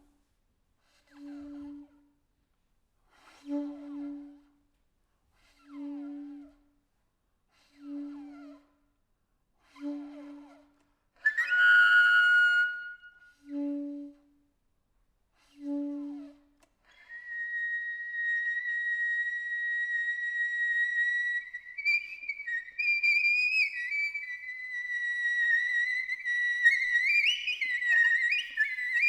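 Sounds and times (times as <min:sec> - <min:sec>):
high whistle-like tone: 0:11.3 - 0:13.4.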